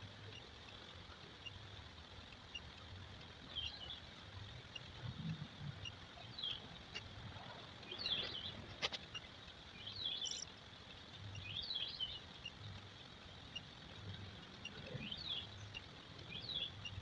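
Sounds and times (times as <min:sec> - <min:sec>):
faint steady hiss: 0:00.0 - 0:17.0
bird-like chirps: 0:03.5 - 0:04.0, 0:05.8 - 0:06.7, 0:07.5 - 0:10.5, 0:14.6 - 0:17.0.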